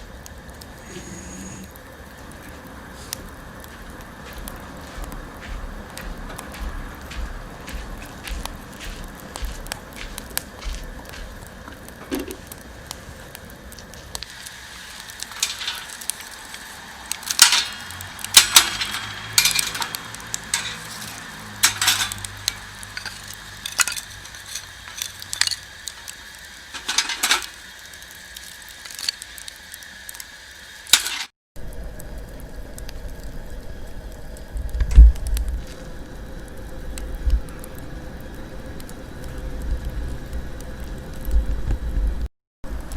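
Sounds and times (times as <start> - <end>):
metal cookware clinking: 15.3 - 16.0, 17.3 - 25.7, 26.8 - 27.5.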